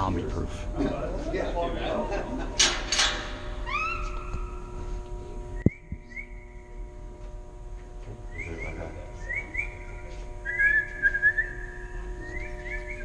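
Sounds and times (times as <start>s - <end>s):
faint steady hum: 0.0s - 13.0s
person whistling: 8.3s - 13.0s.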